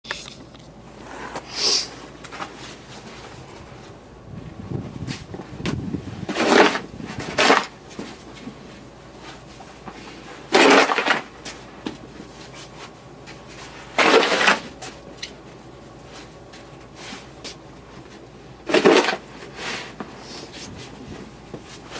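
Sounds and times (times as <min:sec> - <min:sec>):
snow shovel scraping snow: 0:06.3 - 0:07.7, 0:14.0 - 0:14.6, 0:18.7 - 0:20.6.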